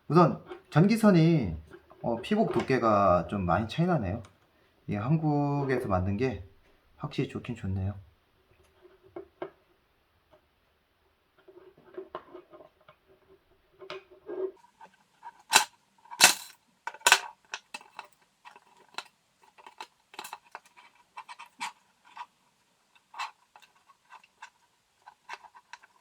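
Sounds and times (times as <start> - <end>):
rustling: 11.3 - 26.0.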